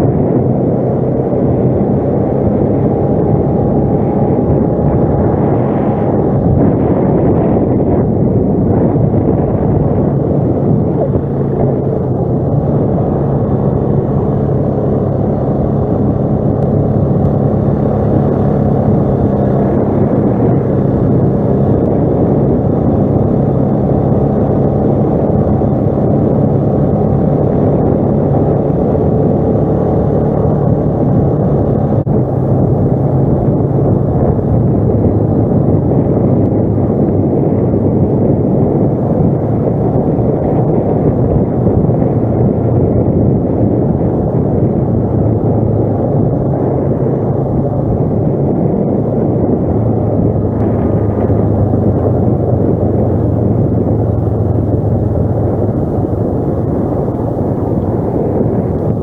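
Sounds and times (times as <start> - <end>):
atv engine running: 0.0 - 59.0.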